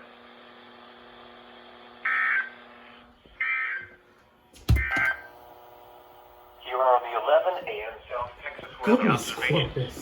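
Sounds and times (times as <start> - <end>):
receiver hum and hiss: 4.9 - 10.0.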